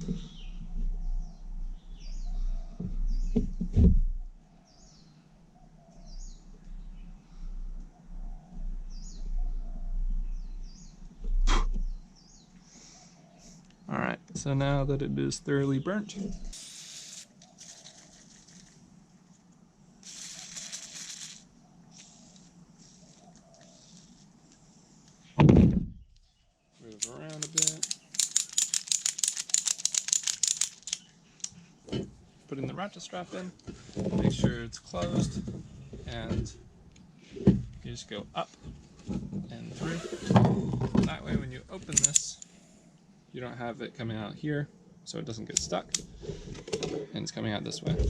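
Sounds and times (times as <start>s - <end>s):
small birds chirping: 0.0s - 3.8s, 4.4s - 13.9s, 14.5s - 18.9s, 20.0s - 25.4s, 26.0s - 33.9s
rustle: 16.4s - 25.4s
ratchet strap handling noise: 16.6s - 18.8s, 20.0s - 24.6s, 26.9s - 31.6s, 41.9s - 42.5s
sharp knocks: 25.4s - 26.0s.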